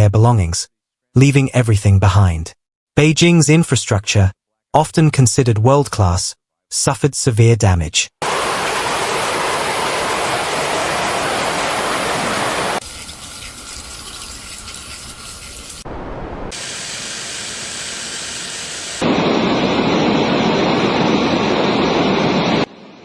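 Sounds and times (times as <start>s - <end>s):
rushing water: 8.2s - 15.9s.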